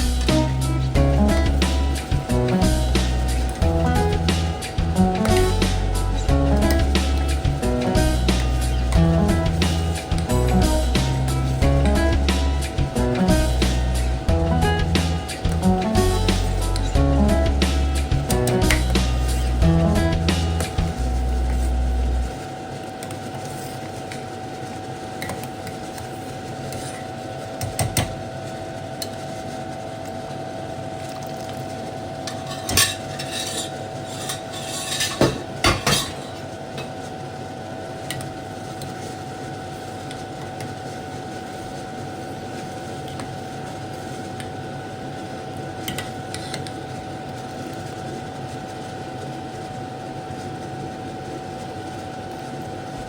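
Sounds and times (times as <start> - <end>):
steady hum: 0.0 - 45.6
metal spoon scraping a pot: 32.3 - 36.4.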